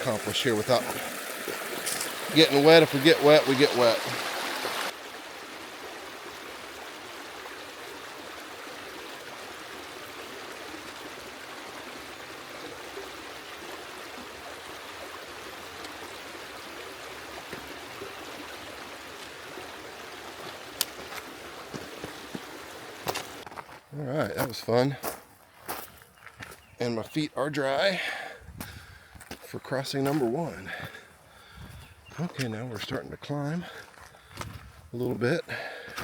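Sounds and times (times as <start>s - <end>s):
water running over rocks: 0.0s - 24.9s.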